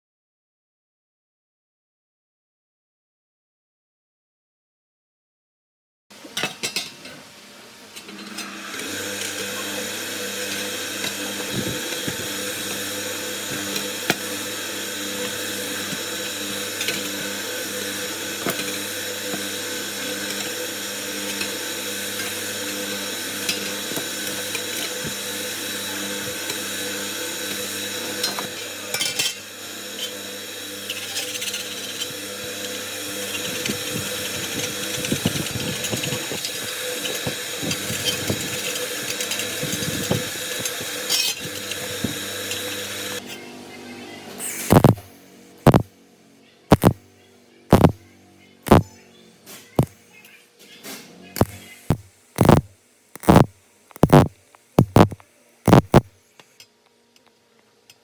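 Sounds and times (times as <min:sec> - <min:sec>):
small electric motor tool running: 0:08.3 - 0:43.2, 0:44.4 - 0:45.9, 0:46.7 - 0:47.1, 0:47.7 - 0:48.0, 0:48.6 - 0:48.9, 0:51.4 - 0:56.2.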